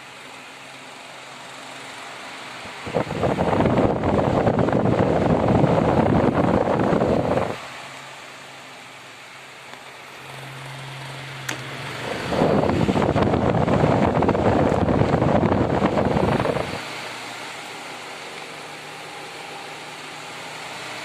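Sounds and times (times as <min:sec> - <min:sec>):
fan airflow blowing on microphone: 0:00.0 - 0:21.0
low motor hum: 0:02.6 - 0:07.7, 0:10.0 - 0:19.6.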